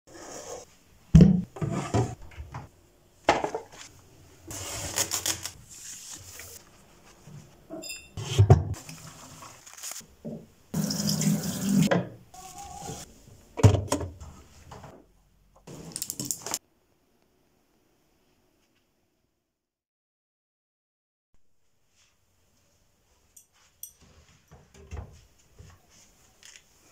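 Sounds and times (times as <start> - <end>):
tap water running: 10.8 - 12.0.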